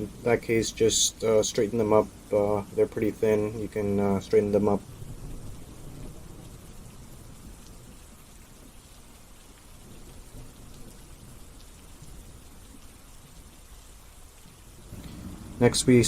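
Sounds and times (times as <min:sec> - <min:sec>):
steady low hiss: 0:00.0 - 0:16.0
faint low rumble: 0:14.8 - 0:16.0.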